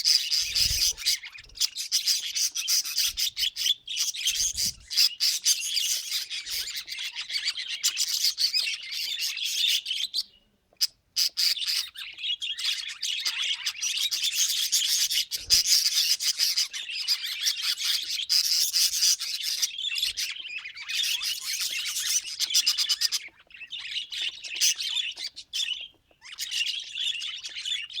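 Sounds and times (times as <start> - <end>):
budgerigars chattering: 0.0 - 28.0.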